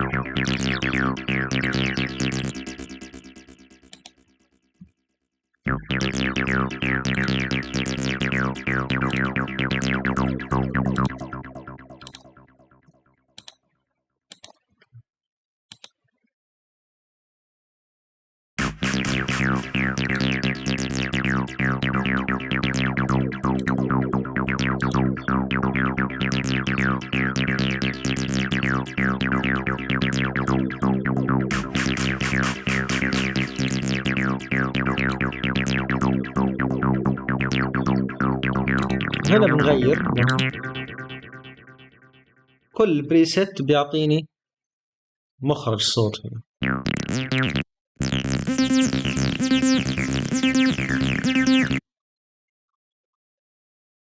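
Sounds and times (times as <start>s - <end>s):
low synthesizer drone: 0.0s - 3.7s, 5.7s - 12.0s, 18.6s - 42.0s, 47.0s - 51.8s.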